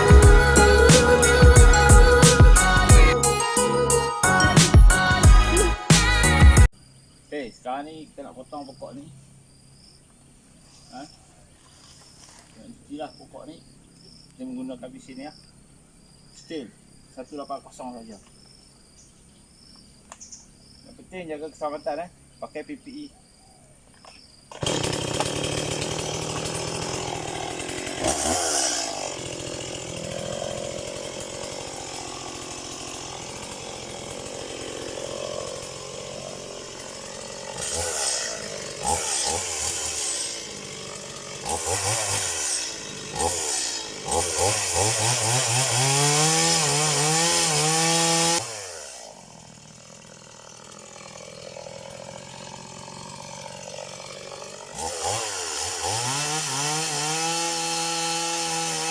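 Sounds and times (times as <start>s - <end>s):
chainsaw cutting and revving: 0.0s - 6.7s, 24.5s - 58.9s.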